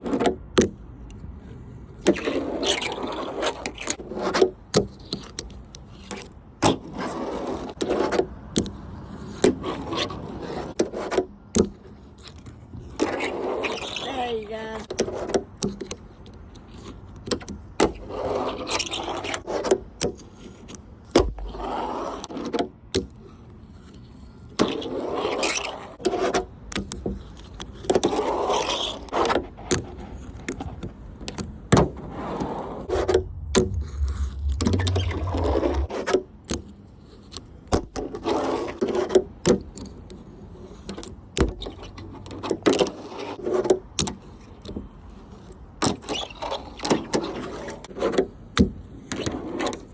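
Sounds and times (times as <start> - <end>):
fingerboard rolling and scraping: 21.3 - 22.6.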